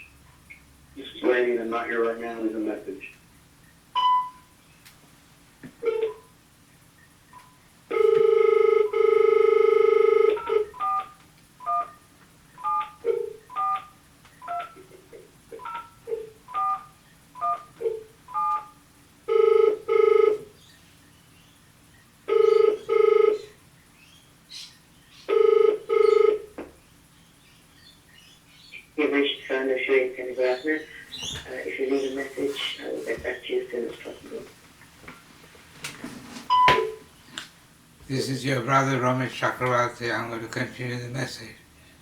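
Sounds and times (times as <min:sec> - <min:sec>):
keypad tones: 0:05.8 - 0:06.3, 0:07.3 - 0:12.0, 0:12.6 - 0:14.8, 0:15.6 - 0:20.5, 0:22.3 - 0:23.5, 0:36.5 - 0:37.0
telephone dial tone: 0:07.9 - 0:12.0, 0:19.3 - 0:20.5, 0:22.3 - 0:23.5, 0:25.3 - 0:26.5.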